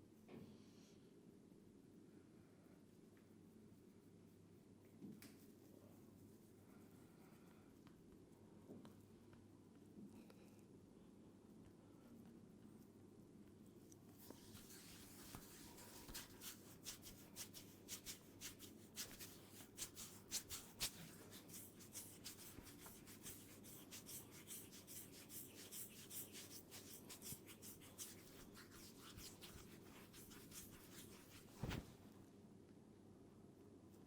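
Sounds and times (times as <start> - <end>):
hands rubbing hair: 14.2 - 32.1.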